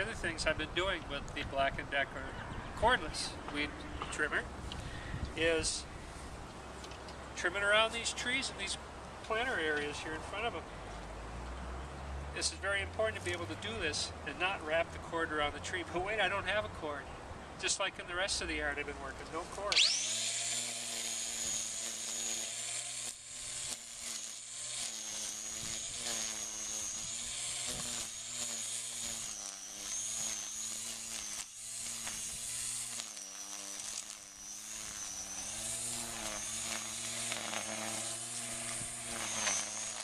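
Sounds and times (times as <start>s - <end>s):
string trimmer whining: 19.2s - 40.0s.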